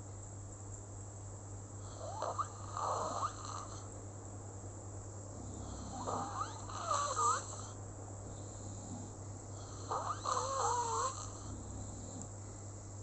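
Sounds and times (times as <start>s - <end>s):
whistling snoring: 1.9s - 3.9s, 5.4s - 7.8s, 8.4s - 12.3s.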